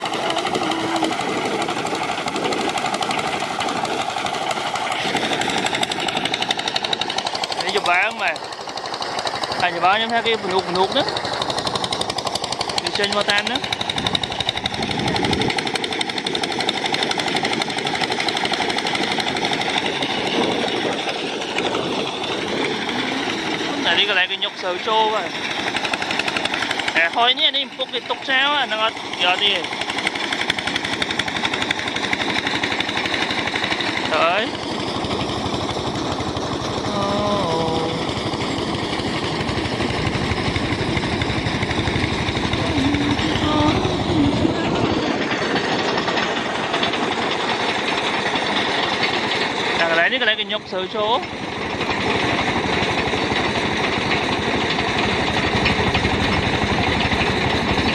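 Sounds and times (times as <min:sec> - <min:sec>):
threshing machine clattering: 0:00.0 - 0:57.9
threshing drum noise: 0:12.8 - 0:15.8.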